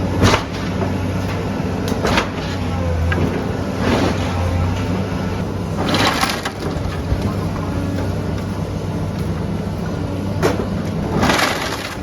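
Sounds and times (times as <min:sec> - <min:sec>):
engine running: 0:00.0 - 0:12.0
wood cracking and crashing: 0:05.8 - 0:07.3, 0:10.4 - 0:12.0.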